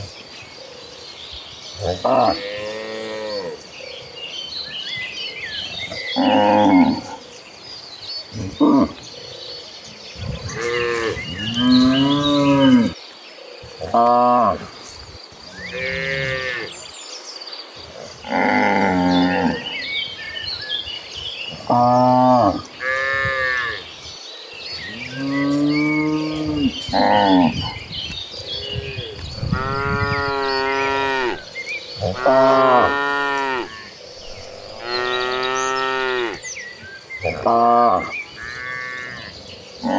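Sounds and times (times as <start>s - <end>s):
cattle mooing: 29.5s - 31.4s.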